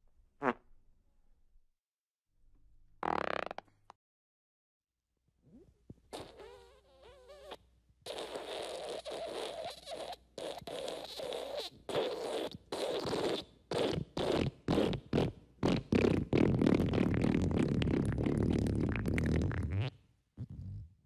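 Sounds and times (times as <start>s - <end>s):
fart sound effects: 0.4s - 0.6s, 3.0s - 3.7s, 5.5s - 20.9s.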